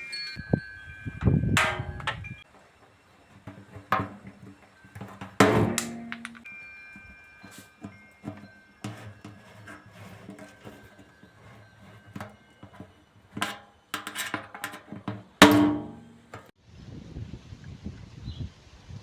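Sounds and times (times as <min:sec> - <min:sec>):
sheet metal parts knocking: 0:01.2 - 0:02.4, 0:03.4 - 0:06.5, 0:07.4 - 0:16.5
loud metallic clang: 0:05.4 - 0:06.5, 0:15.4 - 0:16.5.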